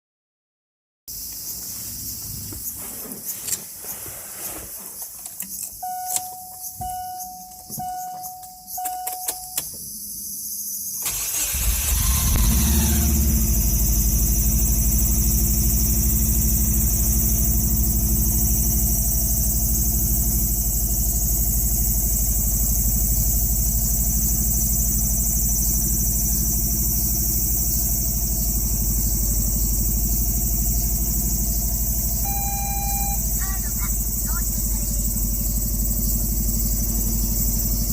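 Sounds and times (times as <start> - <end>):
car engine cranking and idling: 4.8 - 10.1, 11.0 - 37.9
clicks: 5.1 - 9.8
short electronic beeps: 5.8 - 9.7, 32.2 - 34.6
brief whirring at start-up: 11.0 - 13.3.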